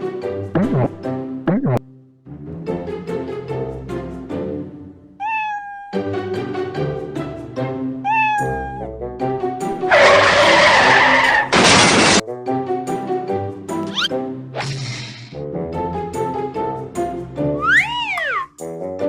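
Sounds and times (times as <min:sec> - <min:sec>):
background music: 0:00.0 - 0:05.2, 0:06.0 - 0:19.0
cat meowing: 0:05.2 - 0:06.0, 0:08.0 - 0:08.9, 0:17.6 - 0:18.6.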